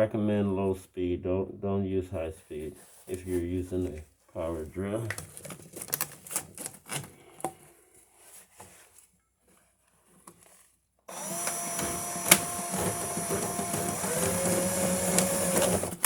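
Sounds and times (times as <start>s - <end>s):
power drill spinning drain cable: 11.1s - 16.0s.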